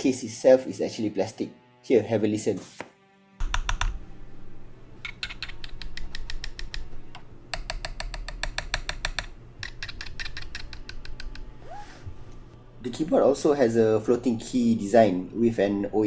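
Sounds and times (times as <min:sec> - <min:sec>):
mechanical keyboard clicking: 0:03.4 - 0:11.7.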